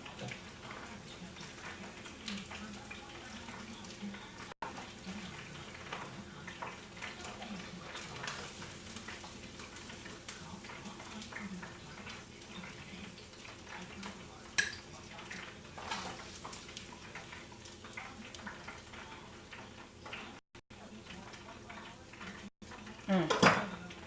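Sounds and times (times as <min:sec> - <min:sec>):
meat sizzling in frying grease: 0:00.0 - 0:24.0.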